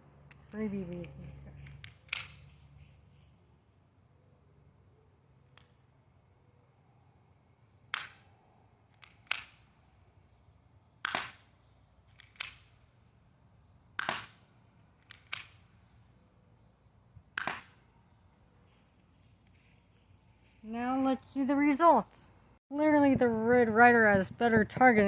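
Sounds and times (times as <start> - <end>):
bb pistol shots: 11.0 - 11.5, 14.0 - 14.4.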